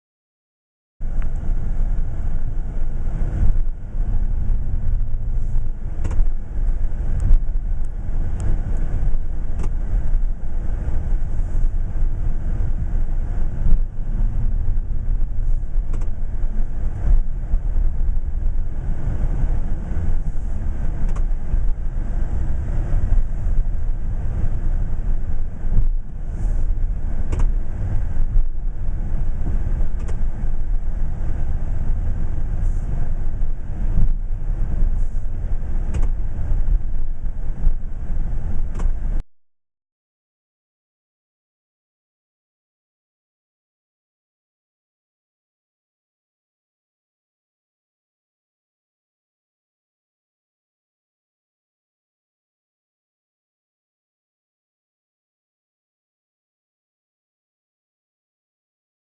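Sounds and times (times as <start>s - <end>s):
diesel truck engine rumbling: 1.0s - 39.2s.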